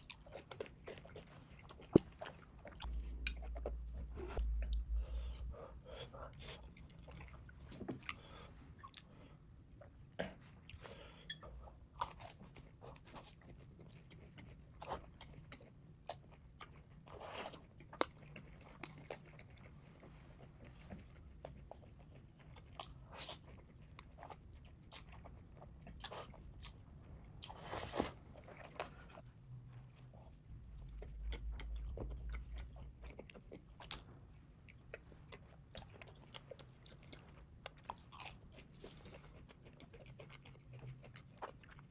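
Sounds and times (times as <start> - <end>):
low rumble: 2.8 - 6.2, 30.5 - 33.1
crunchy chewing: 30.1 - 41.9.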